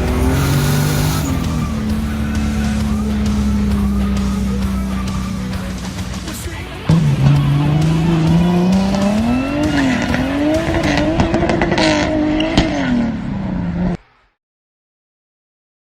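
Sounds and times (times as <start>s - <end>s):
tyres squealing: 0.0s - 11.4s
turbocharged engine revving: 0.0s - 14.0s.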